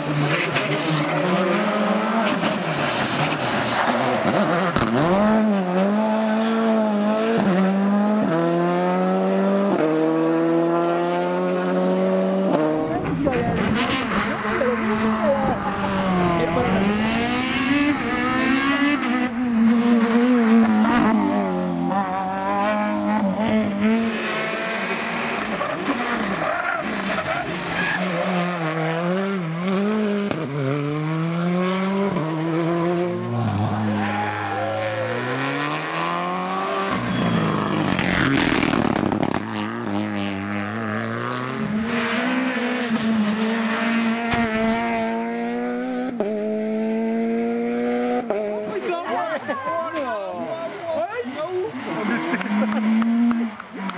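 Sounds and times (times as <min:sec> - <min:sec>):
rally car engine revving: 0:00.0 - 0:49.6, 0:50.3 - 0:53.9
tyre squeal: 0:02.6 - 0:04.4, 0:36.3 - 0:38.6.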